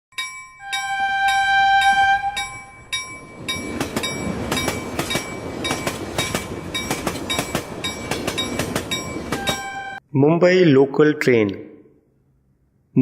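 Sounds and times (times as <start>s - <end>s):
train horn: 0.6s - 2.6s, 9.4s - 10.0s
train wheels clattering on rails: 2.4s - 10.0s.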